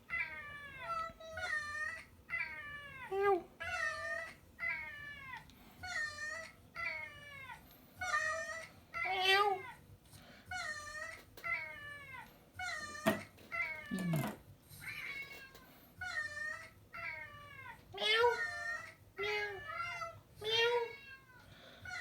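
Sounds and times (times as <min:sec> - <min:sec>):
house cat meowing: 0:12.7 - 0:14.4.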